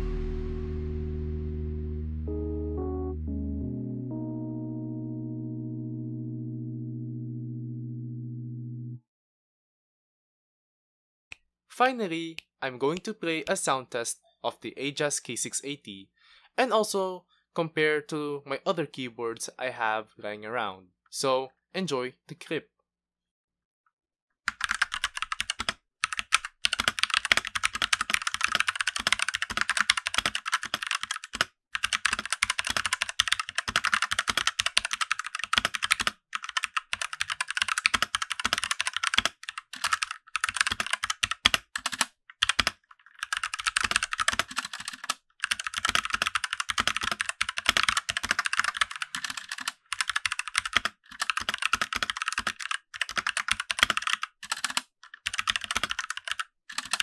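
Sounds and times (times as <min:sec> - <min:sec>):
mechanical keyboard typing: 0:24.5 - 0:57.0.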